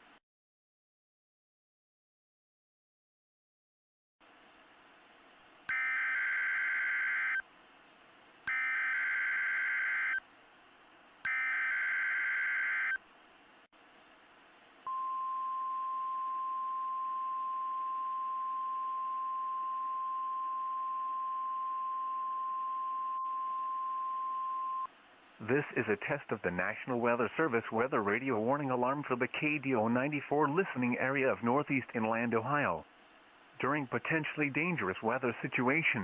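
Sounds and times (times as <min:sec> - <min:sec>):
digital data tone bursts: 0:05.7 - 0:07.4, 0:08.5 - 0:10.2, 0:11.3 - 0:13.0
steady warning alarm tone: 0:05.7 - 0:07.4, 0:08.5 - 0:10.2, 0:11.3 - 0:13.0.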